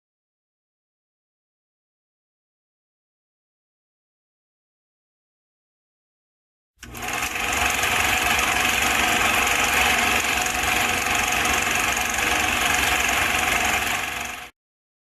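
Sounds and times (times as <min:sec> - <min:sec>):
machine whirring: 0:06.8 - 0:14.5.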